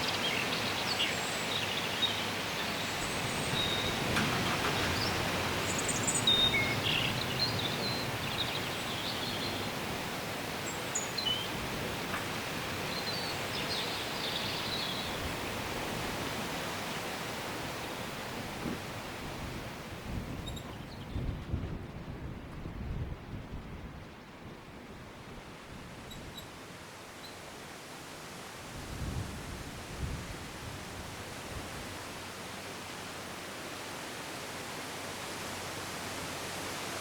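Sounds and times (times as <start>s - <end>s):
wind rustling through trees: 0.0s - 37.0s.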